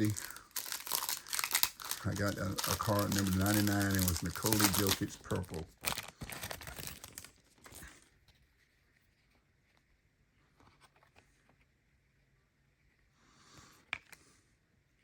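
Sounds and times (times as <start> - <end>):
cards rustling and sliding: 0.0 - 8.4.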